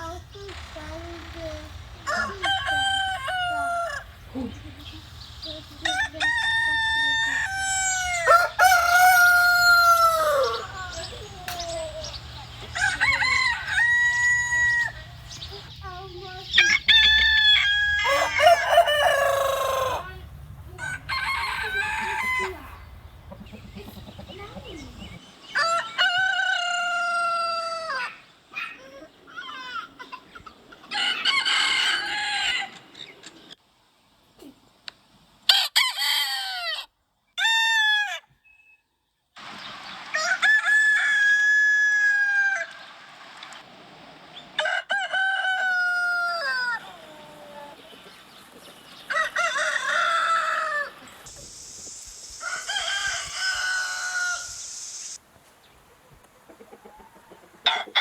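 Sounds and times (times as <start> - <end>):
roosters crowing: 0.6 - 15.6, 16.5 - 28.6, 30.8 - 33.1, 35.5 - 38.4, 40.1 - 43.0, 44.4 - 51.4, 52.3 - 55.2, 56.8 - 58.0.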